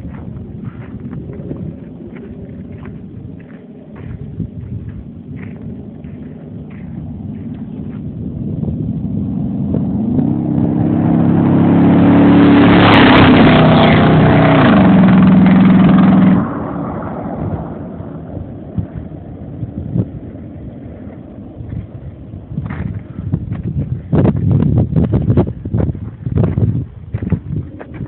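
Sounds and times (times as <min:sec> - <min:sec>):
faint engine sound: 0:00.0 - 0:28.0
pickup truck exhaust driving past: 0:05.3 - 0:22.0.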